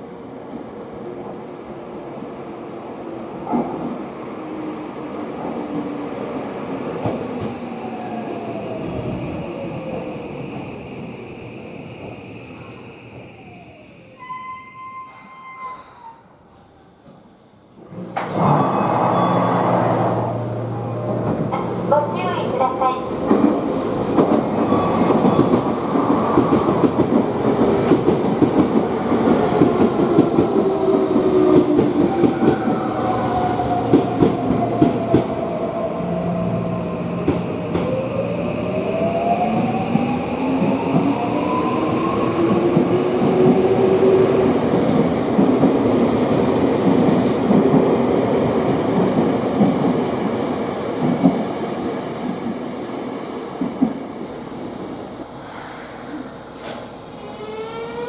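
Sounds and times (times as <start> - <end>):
train wheels clattering on rails: 23.2 - 32.8.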